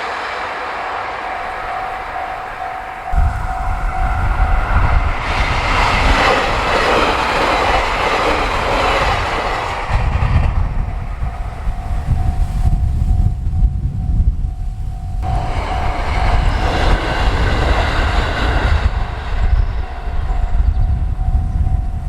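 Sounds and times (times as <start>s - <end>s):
train wheels rushing: 0.0s - 13.8s, 14.8s - 22.0s
level crossing alarm ringing: 0.6s - 5.2s, 11.1s - 22.0s.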